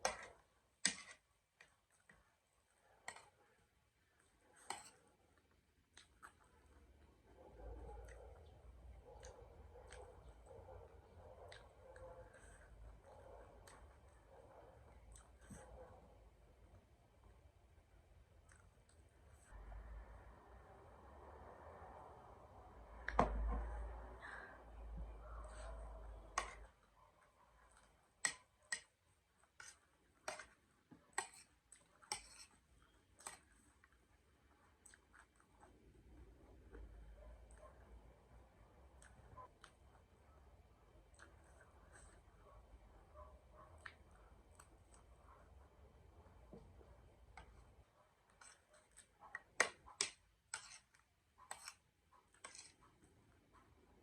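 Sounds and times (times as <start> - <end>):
low hum: 19.4 - 26.3.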